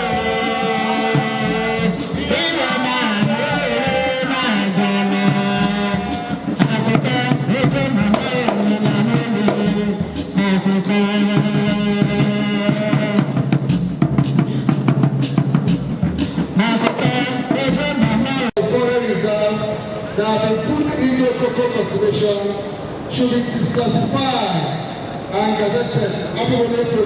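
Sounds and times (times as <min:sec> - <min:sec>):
music with drums and bass: 0:05.0 - 0:18.5.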